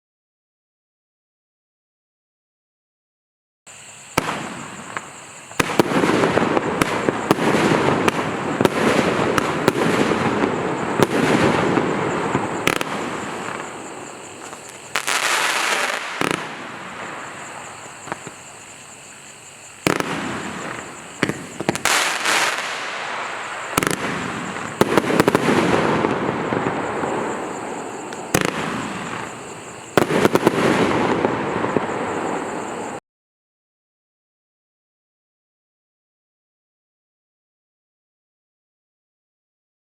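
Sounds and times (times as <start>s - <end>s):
fireworks rushing noise: 3.8s - 19.1s, 19.7s - 33.0s
fireworks sharp reports: 4.1s - 18.8s, 19.7s - 33.0s.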